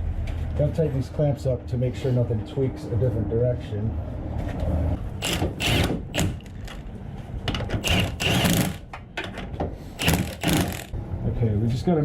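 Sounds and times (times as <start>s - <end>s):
tool rattling tightening bolts: 5.2s - 6.8s, 7.6s - 10.9s.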